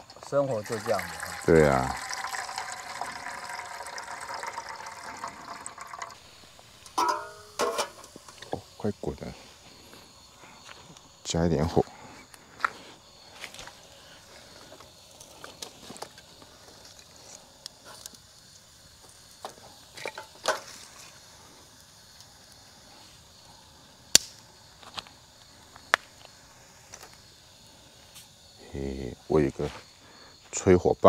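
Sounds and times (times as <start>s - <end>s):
wood fire crackling: 0.0s - 28.4s
sharp pops and knocks: 24.1s - 25.1s.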